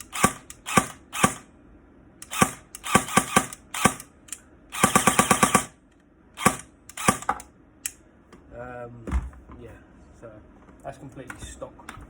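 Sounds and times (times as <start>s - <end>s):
airsoft gun firing: 4.8s - 5.8s.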